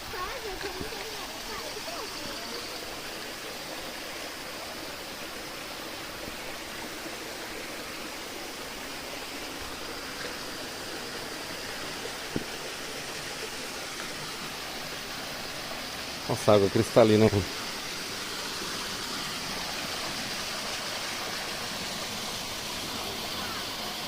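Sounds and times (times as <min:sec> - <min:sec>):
water flowing: 0:00.0 - 0:24.0.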